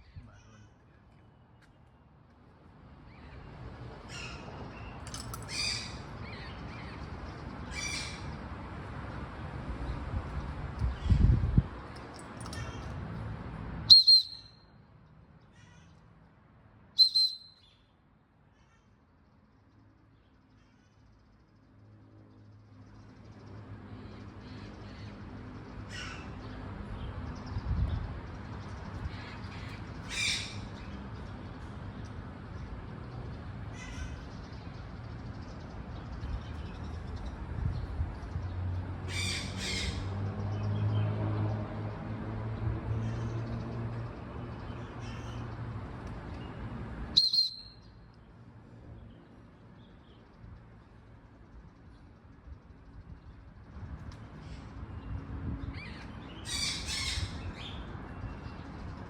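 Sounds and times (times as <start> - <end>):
macaw squawking: 17.0 - 17.4.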